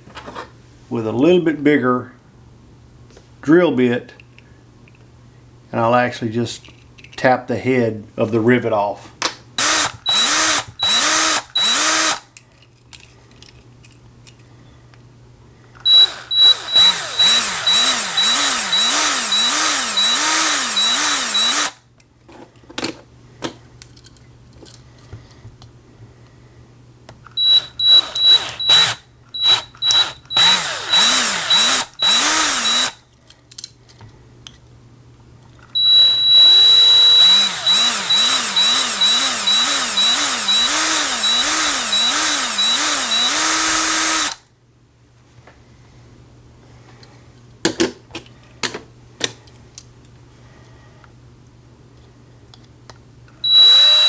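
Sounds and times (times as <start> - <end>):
small electric drill boring: 9.6 - 12.2, 15.9 - 21.8, 27.4 - 33.0, 35.8 - 44.4, 53.4 - 54.0.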